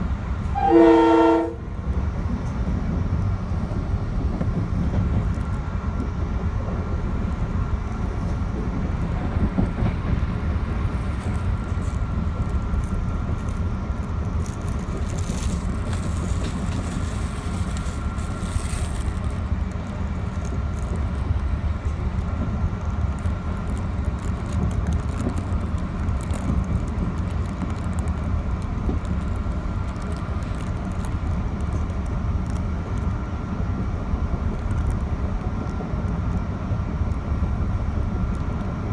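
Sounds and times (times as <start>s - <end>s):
train rumbling along track: 0.0s - 38.9s.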